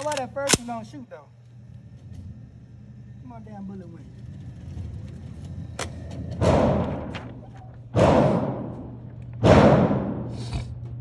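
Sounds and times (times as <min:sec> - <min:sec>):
echoing gunshots: 0:06.4 - 0:10.4.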